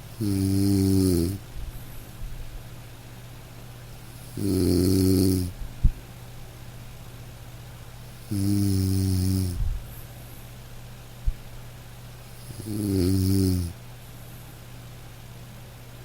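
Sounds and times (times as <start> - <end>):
person snoring: 0.1 - 1.4, 4.1 - 5.6, 8.2 - 9.6, 12.3 - 13.8.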